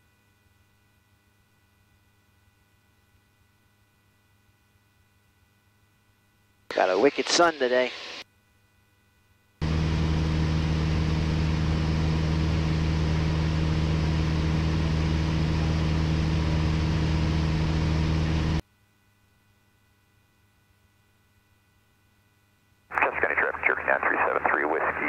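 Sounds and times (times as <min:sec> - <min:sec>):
light aircraft engine drone: 0:06.7 - 0:08.2, 0:09.6 - 0:18.6, 0:22.9 - 0:25.0.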